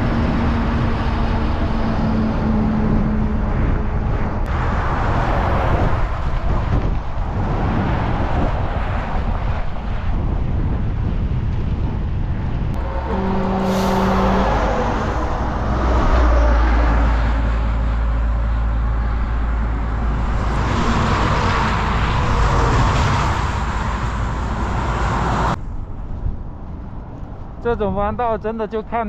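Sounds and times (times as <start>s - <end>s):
traffic passing: 0.0s - 27.6s
wind rumbling on microphone: 0.0s - 29.0s
short pitched horn tone: 12.8s - 18.2s.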